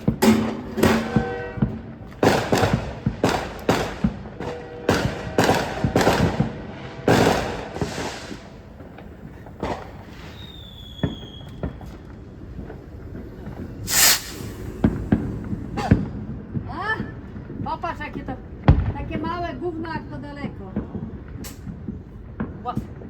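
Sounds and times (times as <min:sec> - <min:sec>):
fireworks pops: 0:00.0 - 0:06.5, 0:07.1 - 0:19.3, 0:20.8 - 0:23.0
fireworks bangs: 0:00.0 - 0:23.0
falling firework whistle: 0:09.6 - 0:16.2.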